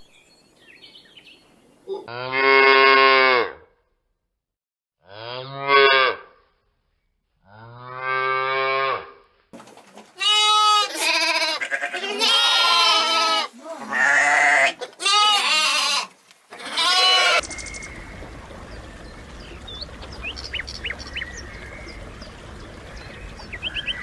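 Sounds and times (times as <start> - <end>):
animals bleating: 10.2 - 18.2.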